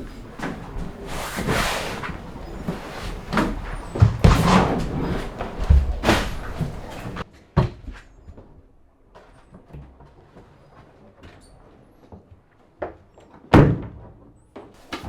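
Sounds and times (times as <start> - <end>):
knocks and thumps: 0.0 - 7.8.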